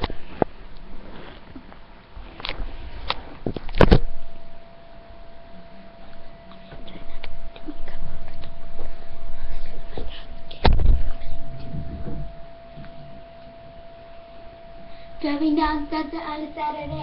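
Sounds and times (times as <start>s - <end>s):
faint steady hum: 0.0s - 17.0s
knocks and rustling: 6.8s - 13.7s
loud thump: 10.6s - 13.3s.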